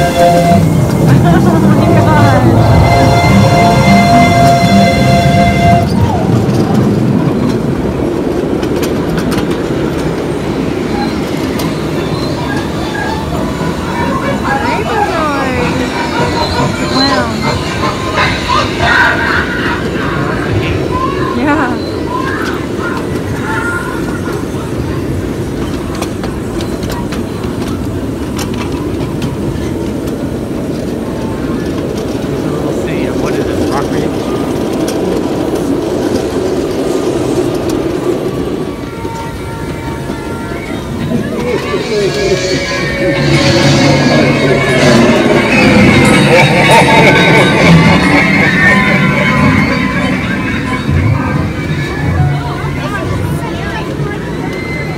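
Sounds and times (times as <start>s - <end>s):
miniature train rumbling: 0.0s - 54.9s
wheels clicking over rail joints: 2.7s - 54.9s
whistle-like tone: 54.3s - 54.9s.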